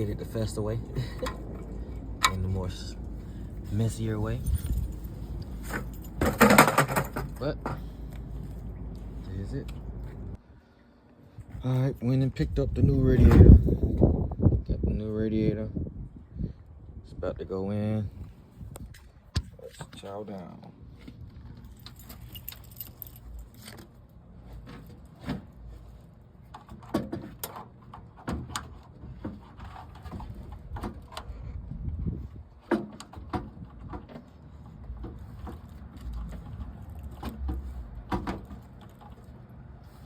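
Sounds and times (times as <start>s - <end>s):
radiator clinking and rattling: 0.0s - 10.4s, 21.6s - 24.0s
low background rumble: 0.0s - 19.7s.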